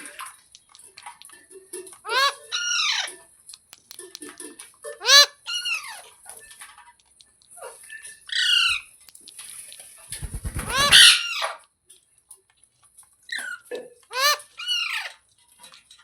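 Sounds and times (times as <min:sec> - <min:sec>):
parrot squawking: 0:05.0 - 0:06.0, 0:10.2 - 0:11.4, 0:14.1 - 0:15.1.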